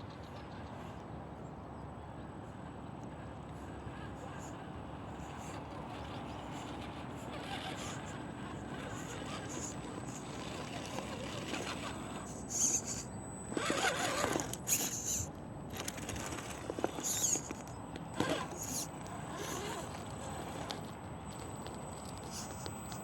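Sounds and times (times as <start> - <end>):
rc crawler driving over rough ground: 0.0 - 23.0
scraping and crunching: 13.5 - 23.0.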